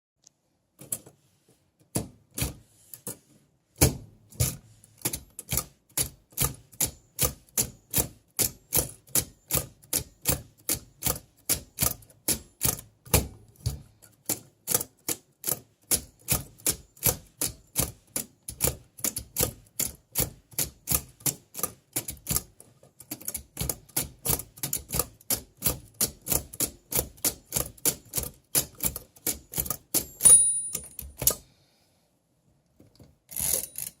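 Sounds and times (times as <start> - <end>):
typewriter keys clacking: 14.2 - 31.4.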